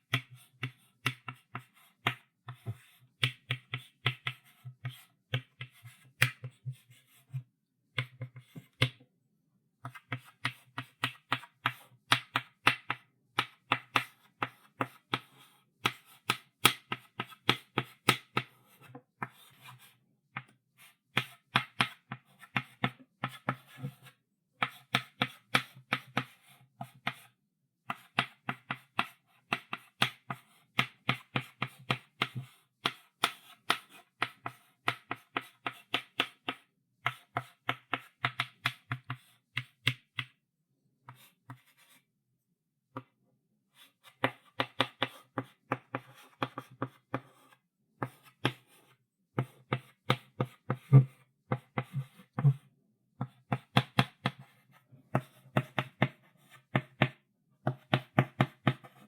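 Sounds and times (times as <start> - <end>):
chalk writing on blackboard: 41.1 - 42.0.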